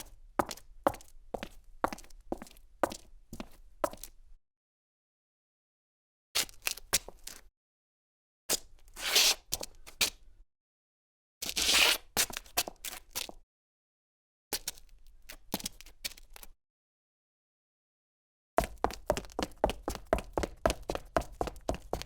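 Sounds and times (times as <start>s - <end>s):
footsteps: 18.6s - 22.0s.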